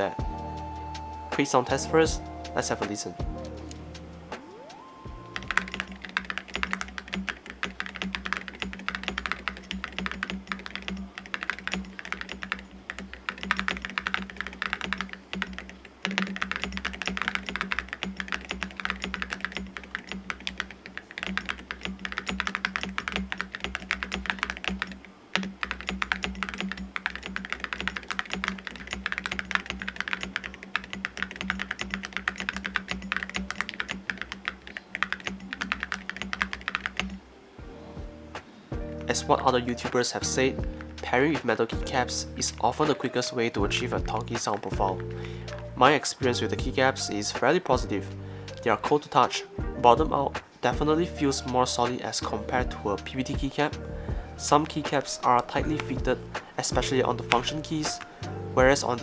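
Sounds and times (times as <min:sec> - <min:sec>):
typing on mechanical keyboard: 0:04.4 - 0:37.3.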